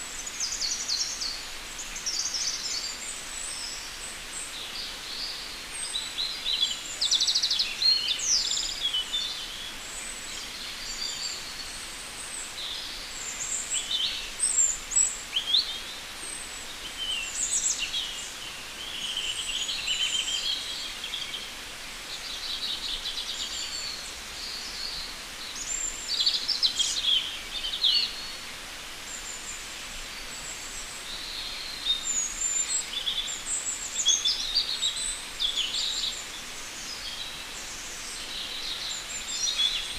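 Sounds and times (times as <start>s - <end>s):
faint background hiss: 0.0s - 39.9s
birds chirping and trilling: 0.2s - 39.9s.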